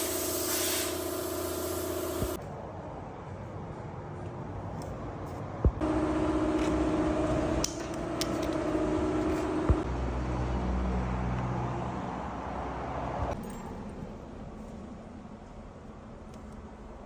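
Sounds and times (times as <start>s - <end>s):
compressor whine: 0.0s - 2.4s, 5.8s - 9.8s.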